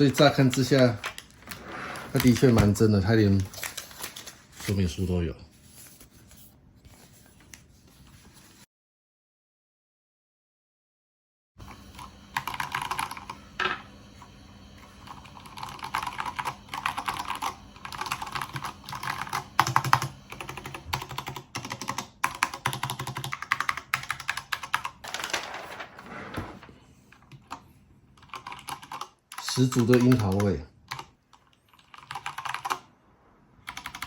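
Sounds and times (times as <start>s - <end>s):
mechanical keyboard typing clicks: 15.5s - 25.3s, 28.2s - 32.8s, 33.7s - 34.0s.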